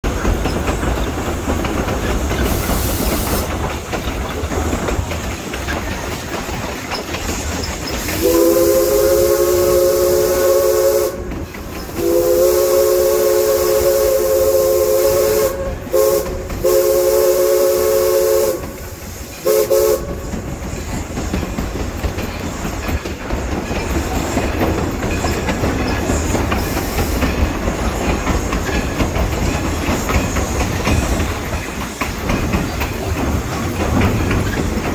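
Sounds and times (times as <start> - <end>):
train wheels clacking on rails: 0.0 - 34.9
steam hissing: 0.1 - 34.9
steam locomotive whistle blowing: 8.0 - 20.4.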